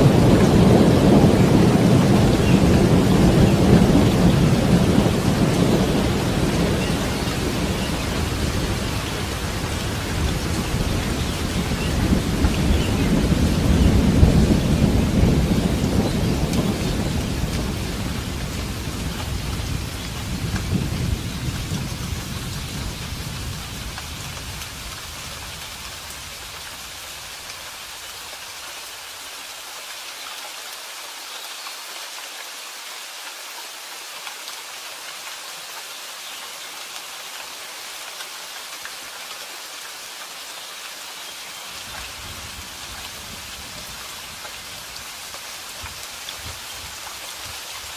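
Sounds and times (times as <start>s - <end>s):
thunder rumbling: 0.0s - 25.6s
steady rain: 0.0s - 47.9s.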